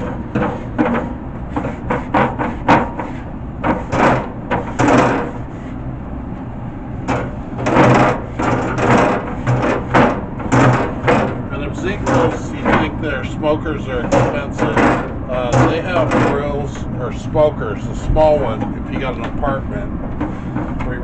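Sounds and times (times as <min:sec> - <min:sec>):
brush scrubbing grill grates: 0:07.3 - 0:19.6.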